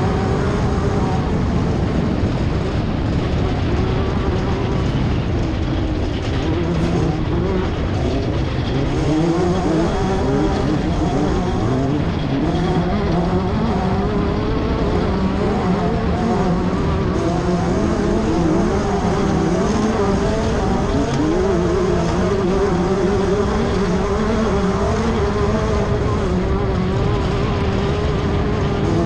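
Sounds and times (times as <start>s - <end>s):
race car engine revving: 0.0s - 29.0s.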